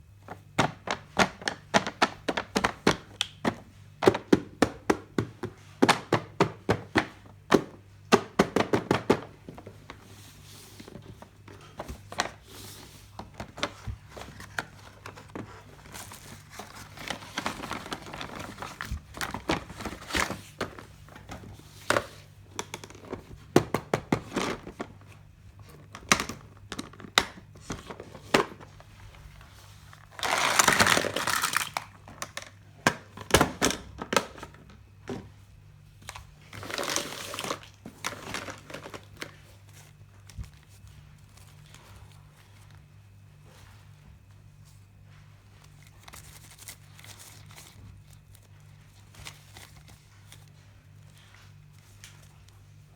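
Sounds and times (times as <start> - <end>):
plastic wrapping crinkling: 10.8 - 22.0, 25.8 - 32.6, 36.4 - 42.8, 45.6 - 52.4.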